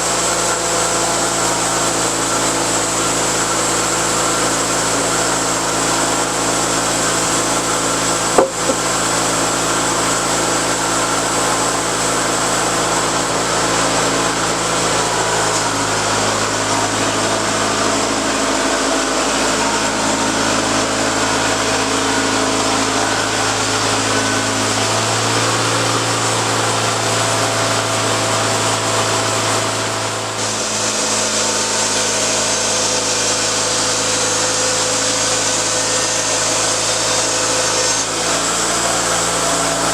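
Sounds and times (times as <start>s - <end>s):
saw blade cutting wood: 0.0s - 39.9s
small engine drone: 0.0s - 39.9s.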